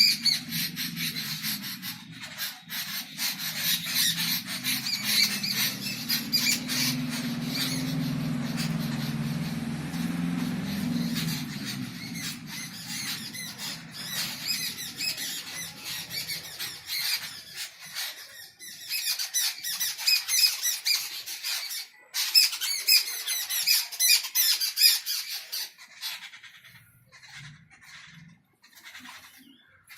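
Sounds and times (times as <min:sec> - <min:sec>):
low hum: 0:00.0 - 0:17.4
small birds chirping: 0:00.0 - 0:29.9.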